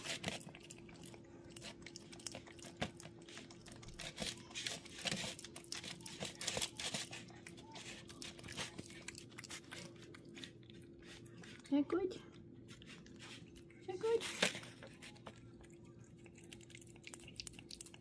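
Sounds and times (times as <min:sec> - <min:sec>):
crinkling: 0:00.0 - 0:11.7
cat chewing food: 0:00.0 - 0:18.0
faint steady hum: 0:00.0 - 0:18.0.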